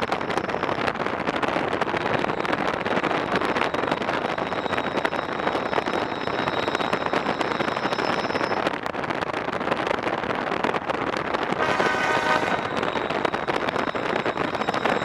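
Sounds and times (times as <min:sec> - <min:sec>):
rushing vehicle noise: 0:00.0 - 0:15.0
wind on microphone: 0:00.0 - 0:15.0
horn-like tone: 0:11.5 - 0:15.0.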